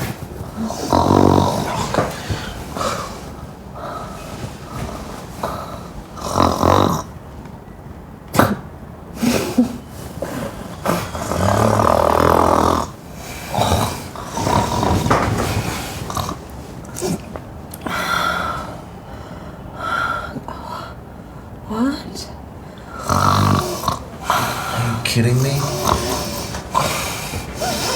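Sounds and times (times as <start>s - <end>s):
person snoring and snorting: 0.6s - 7.1s, 10.8s - 17.3s, 23.0s - 27.9s.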